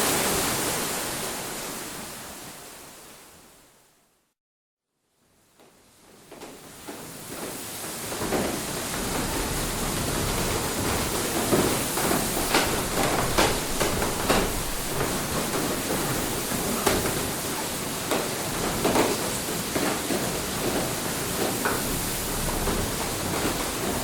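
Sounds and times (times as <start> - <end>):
water mill splashes and knocks: 6.2 - 24.0
water rushing: 7.9 - 24.0.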